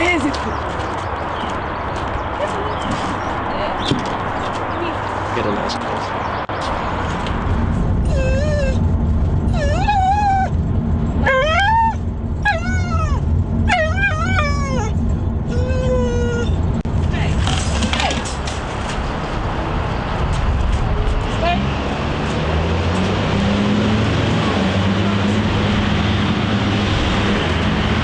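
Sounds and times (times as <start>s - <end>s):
small dog whining: 8.0s - 8.8s, 9.5s - 10.5s, 11.2s - 16.6s.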